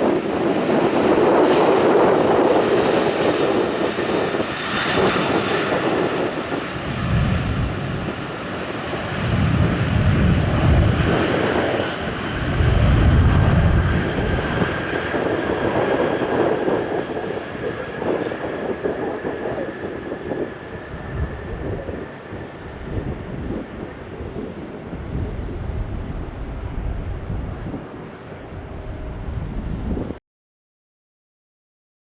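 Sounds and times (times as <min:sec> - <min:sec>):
airplane engines roaring: 0:00.0 - 0:30.2
low rumble bursts: 0:22.7 - 0:30.2.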